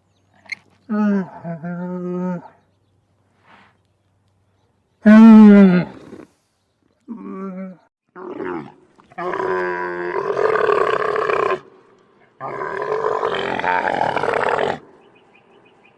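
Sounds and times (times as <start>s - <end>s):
camels moaning and groaning: 0.4s - 2.7s, 7.0s - 14.9s.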